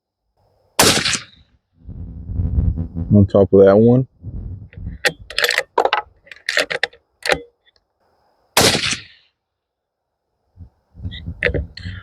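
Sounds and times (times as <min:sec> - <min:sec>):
suppressed rifle shot: 0:00.8 - 0:01.4, 0:08.6 - 0:09.2.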